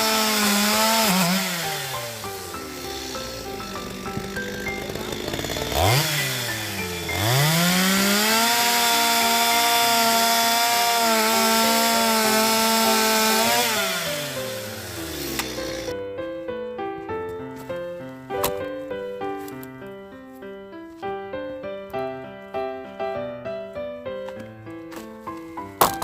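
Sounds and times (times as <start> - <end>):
chainsaw revving and cutting log: 0.0 - 16.0.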